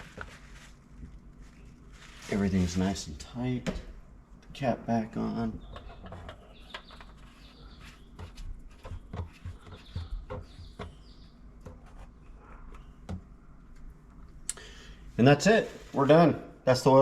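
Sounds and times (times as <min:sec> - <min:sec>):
faint bird chirps: 0:05.4 - 0:13.6.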